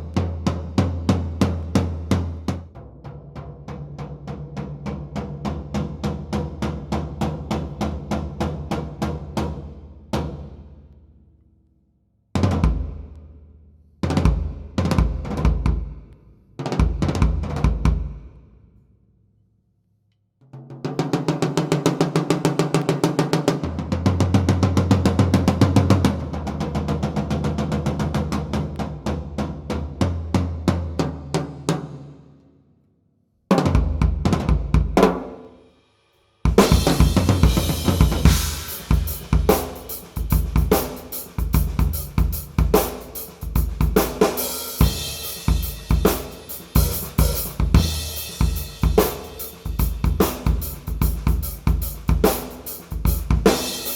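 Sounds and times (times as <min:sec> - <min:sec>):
drum kit being played: 0:33.5 - 0:35.6, 0:36.4 - 0:53.9.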